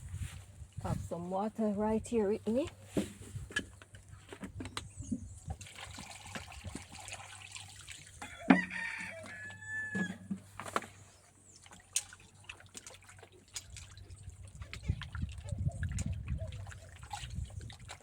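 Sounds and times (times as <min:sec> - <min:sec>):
water splashing in a bowl: 0:05.4 - 0:09.9, 0:11.5 - 0:18.0
rooster crowing: 0:08.2 - 0:10.2.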